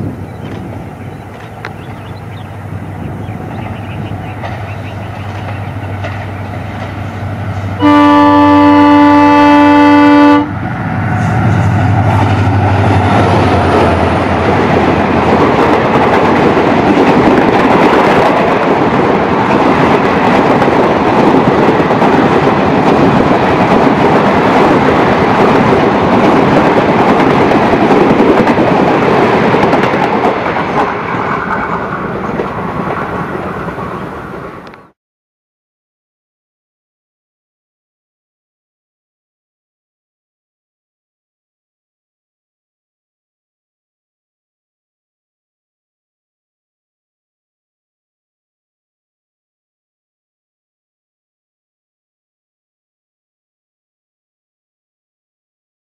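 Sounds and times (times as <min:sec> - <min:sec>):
locomotive engine rumble: 0:00.0 - 0:17.4
train wheels clattering on rails: 0:03.2 - 0:07.2, 0:12.0 - 0:34.6
locomotive horn: 0:07.8 - 0:10.6.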